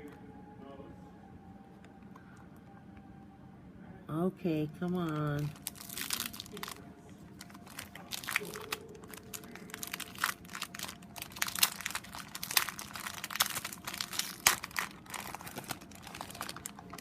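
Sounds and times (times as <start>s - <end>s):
packaging crinkling: 4.9s - 17.0s.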